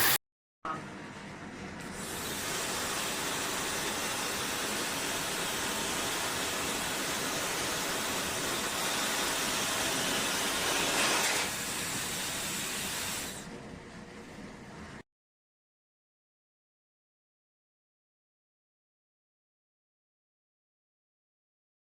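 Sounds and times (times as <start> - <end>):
hair dryer blowing: 2.1 - 11.5.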